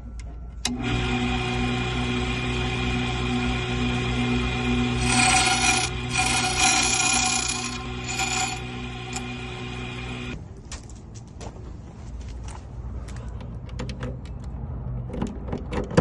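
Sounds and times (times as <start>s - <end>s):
key-cutting machine motor: 4.0s - 10.4s
cutter grinding key blank: 4.7s - 10.0s.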